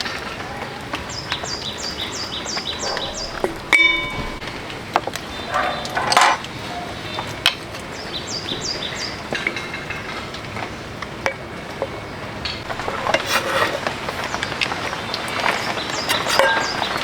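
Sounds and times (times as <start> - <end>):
bird chirping: 1.1 - 7.3, 7.9 - 9.2, 14.1 - 17.0
metallic clink: 2.8 - 4.6
rustling scrape: 2.8 - 4.8, 12.6 - 17.0.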